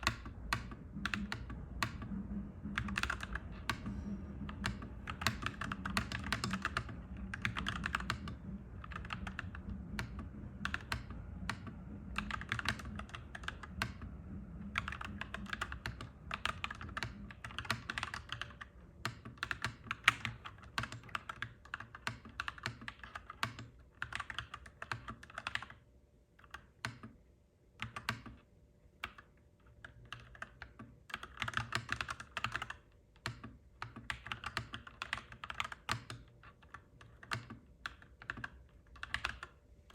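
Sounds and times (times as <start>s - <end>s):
low rumble: 0.0s - 17.9s
mechanical keyboard typing: 0.0s - 25.8s, 26.4s - 27.2s, 27.8s - 39.9s.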